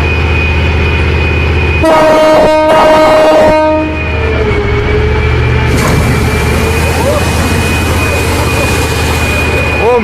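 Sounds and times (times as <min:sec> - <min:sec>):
horn blasting: 0:01.8 - 0:08.1.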